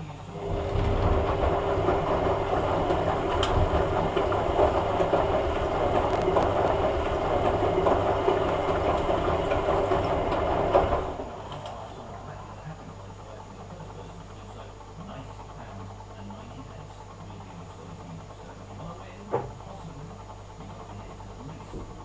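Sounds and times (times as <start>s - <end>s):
washing machine drum turning: 0.0s - 11.7s.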